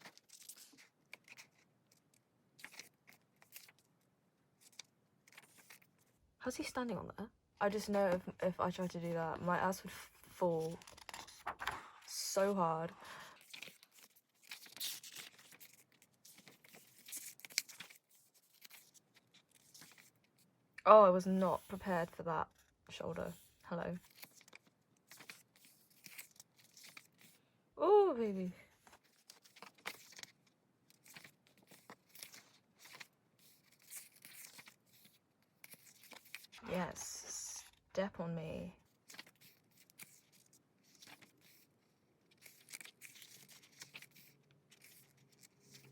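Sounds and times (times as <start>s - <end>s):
paper pages turning: 0.0s - 3.9s, 4.6s - 6.1s, 9.8s - 12.2s, 13.3s - 20.4s, 23.3s - 27.4s, 28.8s - 37.8s, 38.9s - 45.9s.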